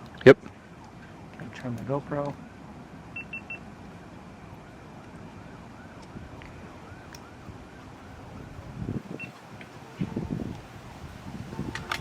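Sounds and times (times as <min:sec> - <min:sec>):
distant siren yelping: 0:00.5 - 0:12.0.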